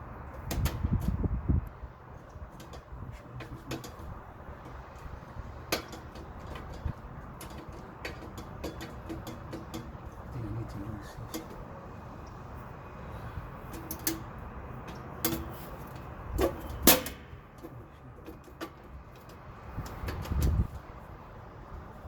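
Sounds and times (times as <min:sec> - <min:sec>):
low background noise: 0:00.0 - 0:22.0
metal parts clicking and knocking: 0:02.5 - 0:10.4.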